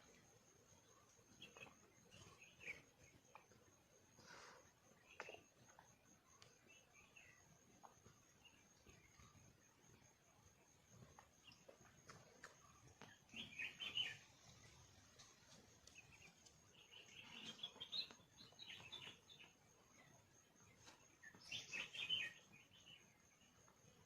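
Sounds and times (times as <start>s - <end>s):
bird chirping: 0.0s - 24.0s.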